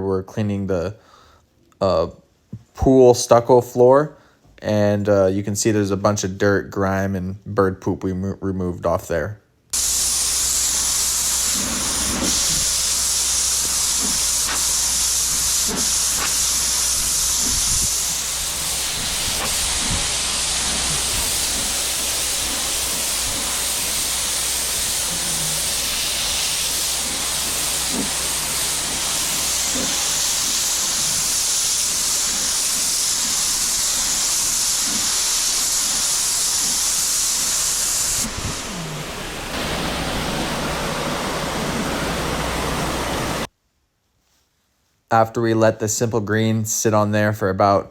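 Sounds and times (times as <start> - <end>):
pressure washer spraying: 9.8 - 43.5
low machine hum: 38.2 - 43.5.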